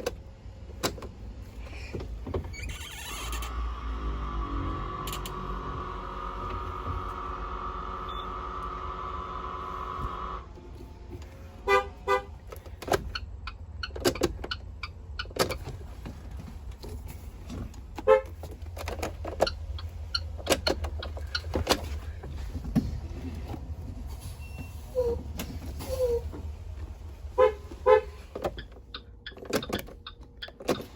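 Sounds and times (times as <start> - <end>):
bus horn blasts: 11.6 - 12.4, 18.0 - 18.4, 27.3 - 28.4
sharp clicks and knocks: 12.4 - 24.1.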